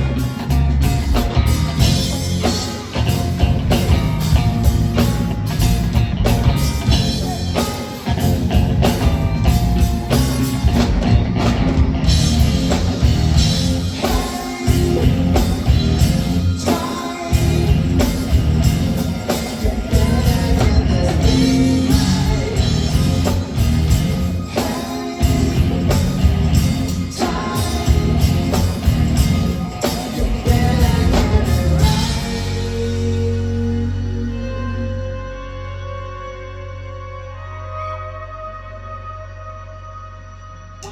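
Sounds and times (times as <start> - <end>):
drum kit: 0.0 - 34.0
guitars: 0.0 - 40.9
person singing: 6.6 - 9.1, 13.8 - 38.2.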